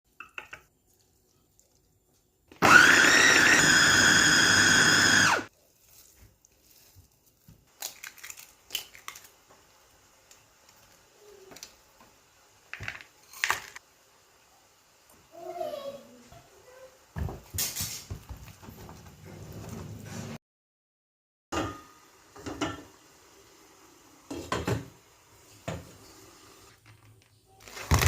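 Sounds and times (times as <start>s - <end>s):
kitchen clicks and knocks: 0.1s - 0.8s, 21.6s - 22.9s, 24.3s - 25.0s
food chopper motor whine: 2.6s - 5.5s.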